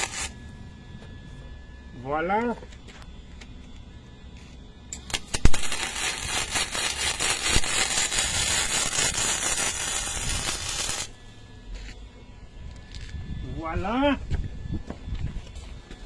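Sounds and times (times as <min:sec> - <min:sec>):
welding arc crackling sizzle: 0:00.0 - 0:00.4, 0:04.9 - 0:11.2
arc striking cracks: 0:05.0 - 0:11.1.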